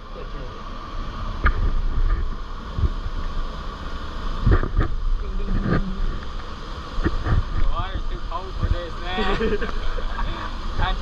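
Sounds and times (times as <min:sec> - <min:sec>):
waterfall rushing: 0:00.0 - 0:11.0
low thumps: 0:04.4 - 0:07.8.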